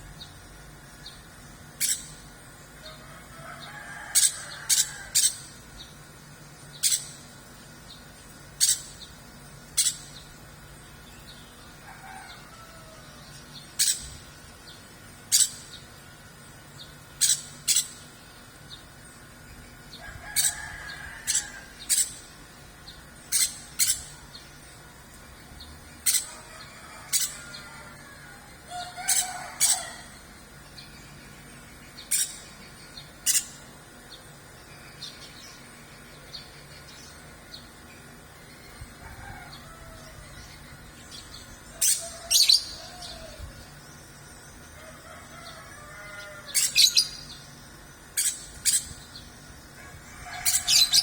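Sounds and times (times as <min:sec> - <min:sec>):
songbird high-pitched chirps: 0:01.8 - 0:02.3, 0:06.6 - 0:11.7, 0:13.2 - 0:15.9, 0:16.8 - 0:18.9, 0:26.0 - 0:26.5, 0:28.8 - 0:38.9, 0:40.3 - 0:44.7, 0:46.4 - 0:49.4, 0:50.4 - 0:51.0
roosters crowing: 0:02.8 - 0:05.8, 0:11.6 - 0:13.6, 0:19.3 - 0:22.6, 0:26.0 - 0:30.6, 0:38.8 - 0:43.8, 0:44.6 - 0:47.5, 0:49.1 - 0:51.0.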